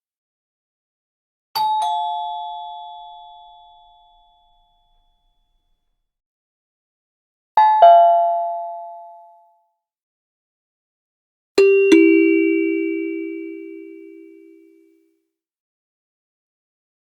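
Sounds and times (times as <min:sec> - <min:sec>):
doorbell ding-dong chime: 0:11.6 - 0:14.9.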